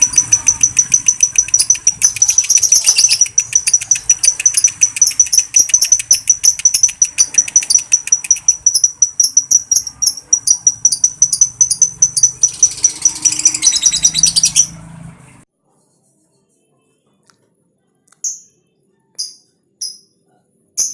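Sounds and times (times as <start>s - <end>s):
bird chirping rapidly: 0.0s - 15.1s.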